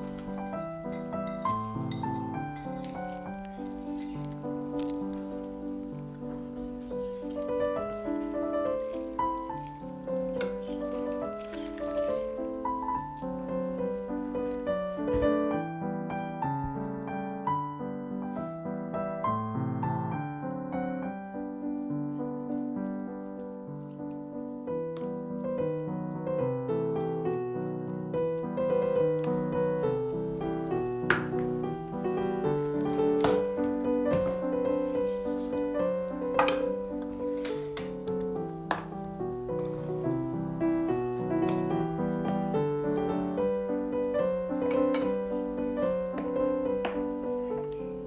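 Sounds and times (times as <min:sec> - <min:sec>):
calm piano music: 0:00.0 - 0:48.0.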